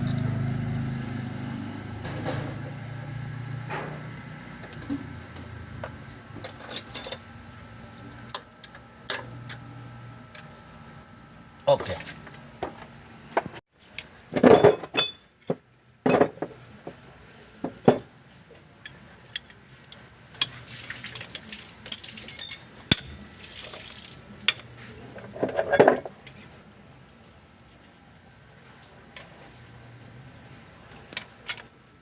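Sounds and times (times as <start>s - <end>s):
metal tools clinking: 6.4s - 7.5s, 14.0s - 16.5s, 21.2s - 23.3s, 24.5s - 26.5s, 31.1s - 31.7s.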